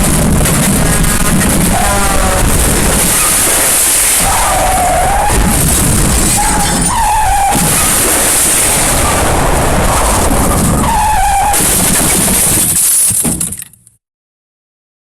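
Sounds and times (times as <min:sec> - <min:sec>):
crashing and smashing: 0:00.0 - 0:13.7
brief squealing tones: 0:01.7 - 0:11.9.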